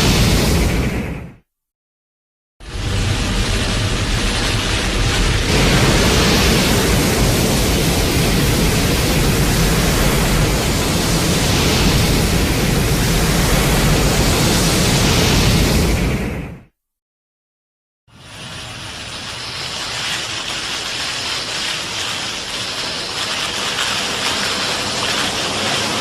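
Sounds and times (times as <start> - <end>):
loud rushing noise: 0.0 - 1.4, 2.6 - 16.7.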